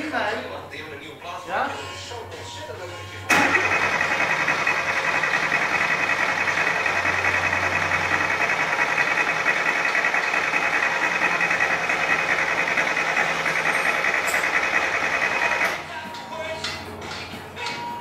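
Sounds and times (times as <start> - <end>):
car engine running: 2.0 - 15.8.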